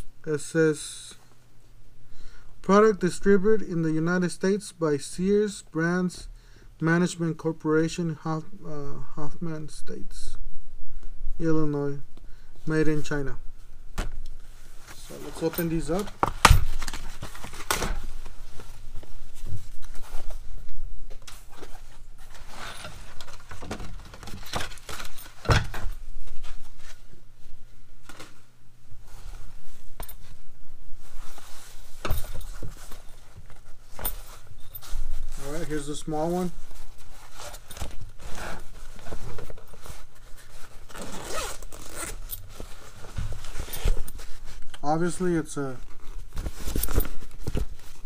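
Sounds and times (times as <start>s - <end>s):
fabric bags rustling: 14.6s - 20.6s, 21.3s - 48.0s.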